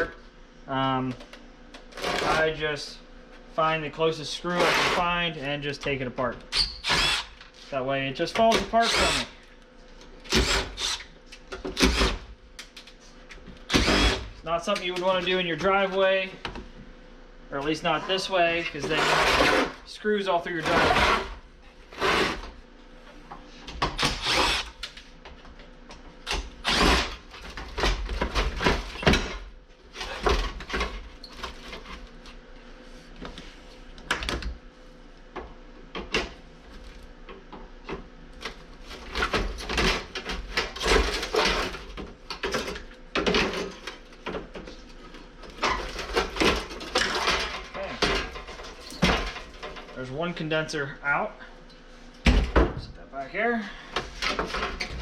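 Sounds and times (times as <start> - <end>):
power drill running in bursts: 6.8 - 7.4, 8.8 - 9.3, 10.3 - 11.0, 13.7 - 14.3, 24.0 - 24.8, 26.6 - 27.2.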